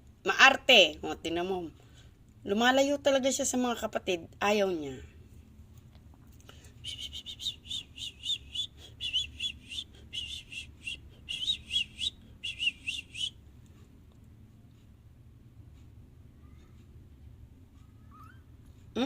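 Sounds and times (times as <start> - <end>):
small bird chirping: 6.8 - 13.4, 17.8 - 18.5.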